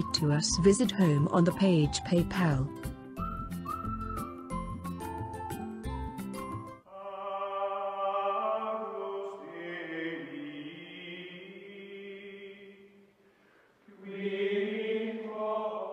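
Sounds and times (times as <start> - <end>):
chanting voices: 6.9 - 13.1, 13.8 - 15.9.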